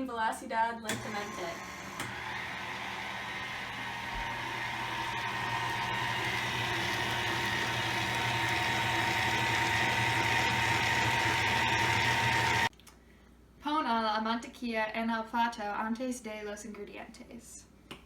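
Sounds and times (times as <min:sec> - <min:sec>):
electric mixer beating batter: 0:00.9 - 0:12.7.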